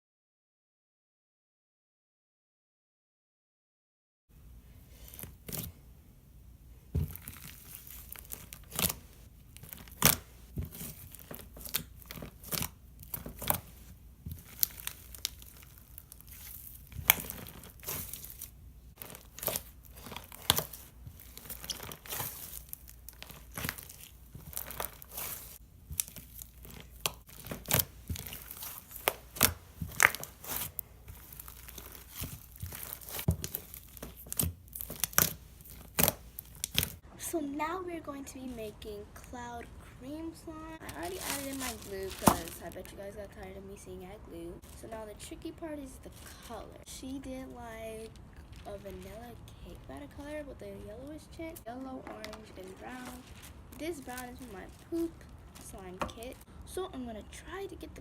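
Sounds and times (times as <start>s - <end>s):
slime squishing and crackling: 4.9s - 5.8s, 6.9s - 37.0s, 40.8s - 43.5s, 44.6s - 56.8s.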